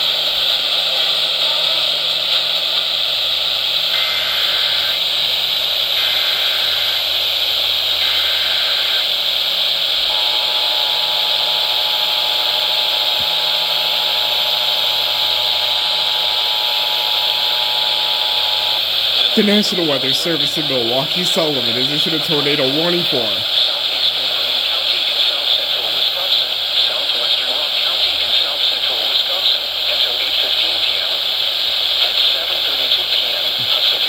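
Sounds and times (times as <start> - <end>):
radio hiss: 0.0 - 34.0
warbling data header bursts: 3.7 - 23.6.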